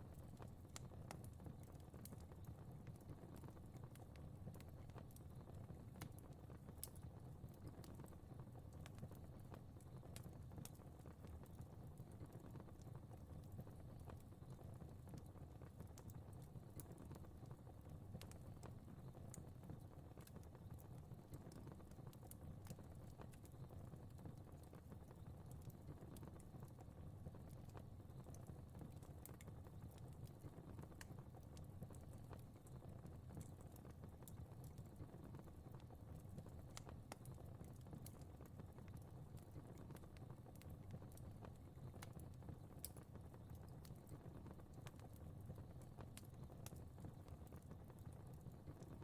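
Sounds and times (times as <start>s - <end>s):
fire crackling with pops: 0.1s - 49.0s.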